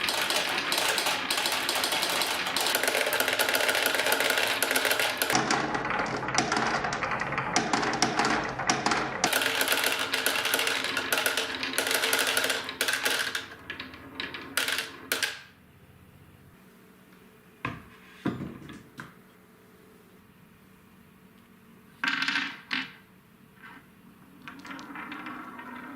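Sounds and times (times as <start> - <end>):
lone marble clacks: 0.0 - 15.5
marbles rolling down wooden track: 0.0 - 15.5, 22.0 - 23.0, 24.4 - 25.9.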